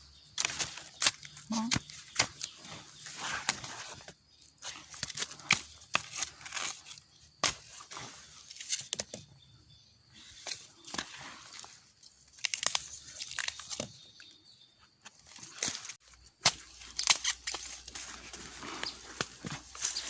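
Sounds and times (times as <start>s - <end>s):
twigs snapping: 0.3s - 8.0s, 10.4s - 14.3s, 15.0s - 20.0s.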